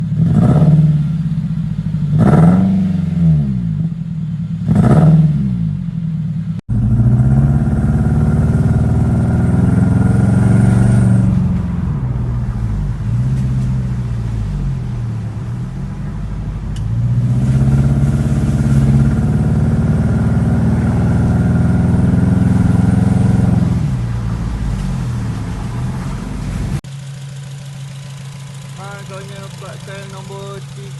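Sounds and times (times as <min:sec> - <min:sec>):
rough four-cylinder engine revving: 0:00.0 - 0:30.9.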